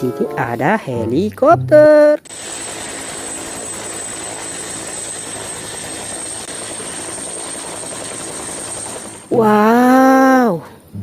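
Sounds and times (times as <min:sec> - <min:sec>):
helicopter engine and rotor: 0:02.3 - 0:09.4.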